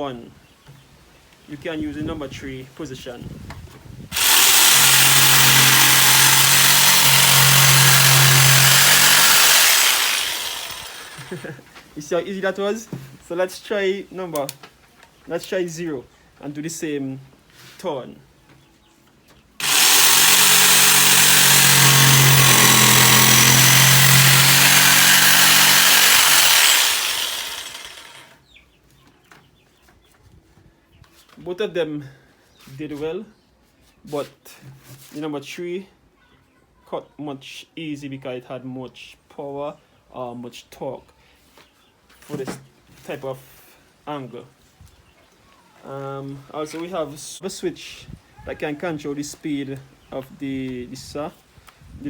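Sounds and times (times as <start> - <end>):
jigsaw blade rasping: 4.2 - 11.5, 19.6 - 28.3
jigsaw motor hum: 4.2 - 11.6, 19.6 - 28.3.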